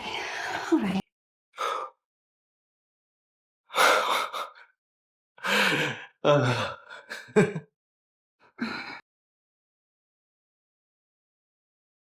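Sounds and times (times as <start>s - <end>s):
person gasping and sighing: 5.4s - 7.3s.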